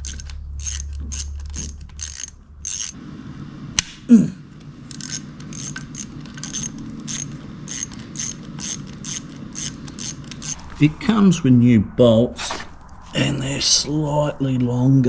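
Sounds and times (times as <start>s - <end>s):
ratchet wrench clicking: 0.0s - 3.0s, 4.9s - 10.6s.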